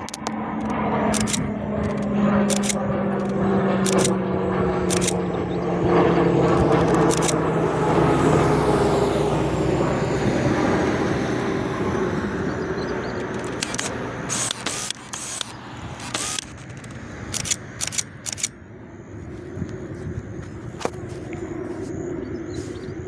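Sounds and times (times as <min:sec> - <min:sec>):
turboprop plane passing: 0:00.0 - 0:23.0
camera shutter clicks: 0:01.1 - 0:04.2, 0:04.9 - 0:05.2, 0:06.8 - 0:07.4, 0:13.2 - 0:18.6.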